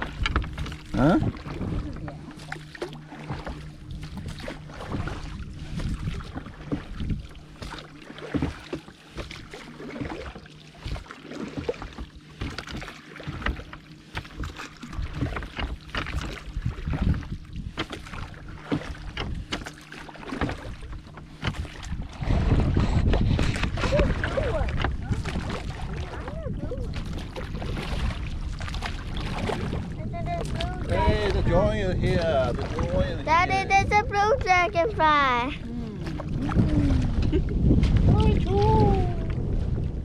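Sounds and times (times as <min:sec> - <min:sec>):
wind buffeting microphone: 0:00.0 - 0:02.3, 0:03.3 - 0:07.4, 0:16.1 - 0:19.6, 0:20.5 - 0:40.0
water splashing against boat hull: 0:00.0 - 0:40.0.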